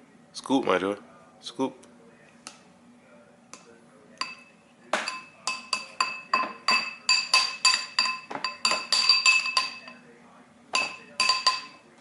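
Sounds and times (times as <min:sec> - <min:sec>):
spoon banging on a bowl: 0:04.2 - 0:10.0, 0:10.7 - 0:11.8.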